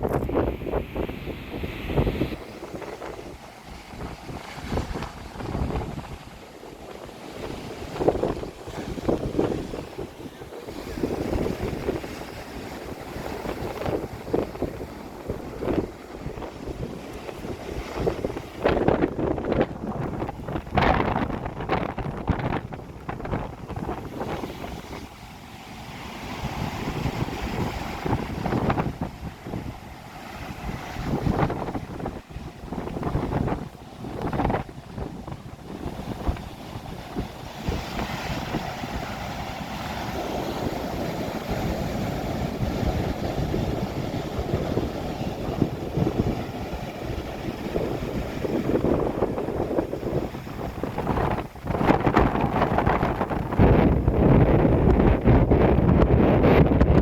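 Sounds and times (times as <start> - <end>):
rough surf: 0.0 - 57.0
wind buffeting microphone: 0.0 - 57.0.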